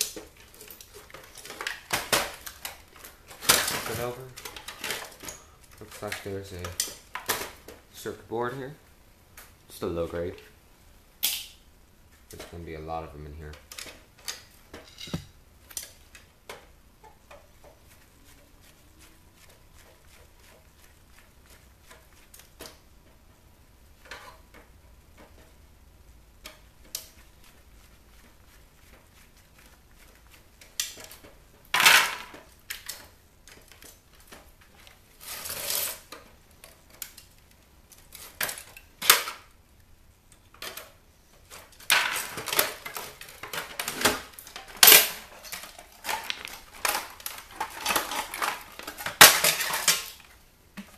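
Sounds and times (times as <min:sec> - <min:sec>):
parts clattering: 0:00.0 - 0:07.7, 0:13.7 - 0:15.9, 0:30.8 - 0:32.4, 0:41.8 - 0:50.9.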